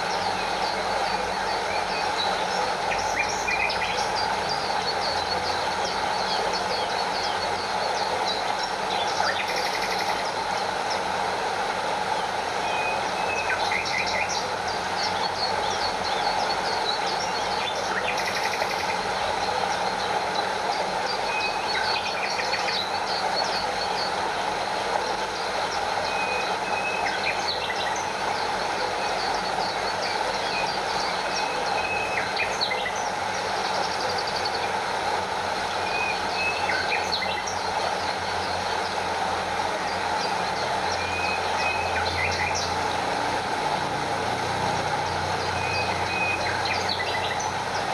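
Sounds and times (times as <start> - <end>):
stream rushing: 0.0 - 47.9
water spilling over waterfall: 0.0 - 47.9
birds chirping: 25.2 - 47.9.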